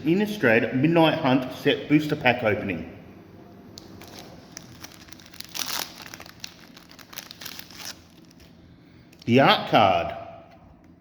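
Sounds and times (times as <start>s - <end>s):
foil wrapper tearing and crinkling: 3.9s - 8.6s.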